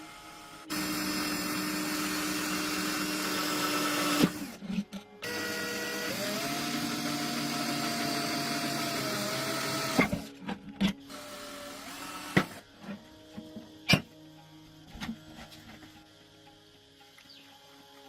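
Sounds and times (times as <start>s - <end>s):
power tool motor whirring: 0.0s - 10.3s, 11.0s - 12.7s.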